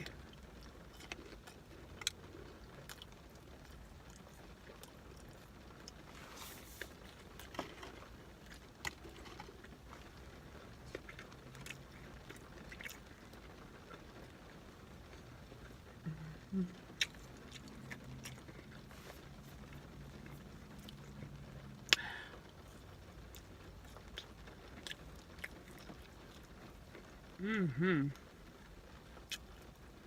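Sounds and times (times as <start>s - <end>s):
person chewing food: 0.0s - 27.4s, 29.2s - 29.8s
lip smacks and wet clicks: 29.2s - 29.7s.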